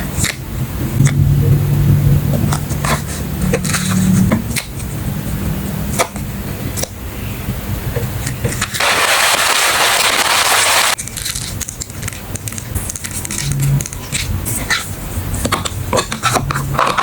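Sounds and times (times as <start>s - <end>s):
loud steady rush: 0.0s - 11.0s
packaging crinkling: 8.5s - 14.3s.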